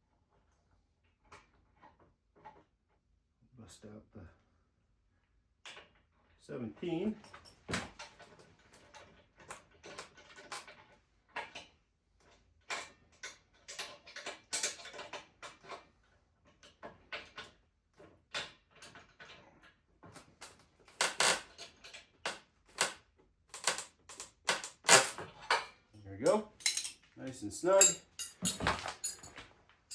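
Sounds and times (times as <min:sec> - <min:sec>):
wrench clicking and clinking: 0:26.3 - 0:27.0, 0:27.7 - 0:29.3.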